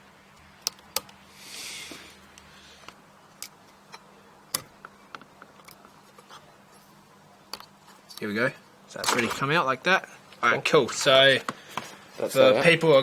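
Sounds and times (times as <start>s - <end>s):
sharp plastic clicks: 0.4s - 1.2s.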